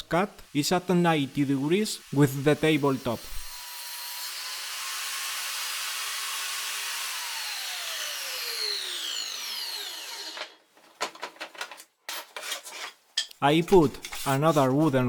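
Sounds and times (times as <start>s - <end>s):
table saw running and coasting down: 0.9s - 10.6s.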